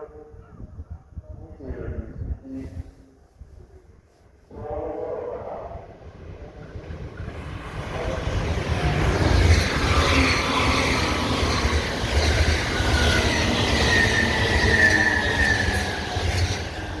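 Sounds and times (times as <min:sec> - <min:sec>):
train wheels rumbling on rail: 0:05.1 - 0:17.0.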